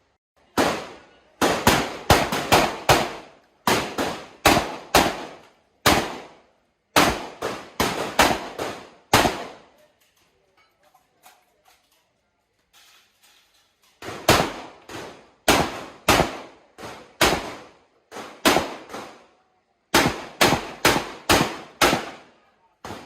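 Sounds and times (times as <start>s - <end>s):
rapid shotgun shots: 0.6s - 6.4s, 7.0s - 9.7s, 14.0s - 19.2s, 19.9s - 23.0s.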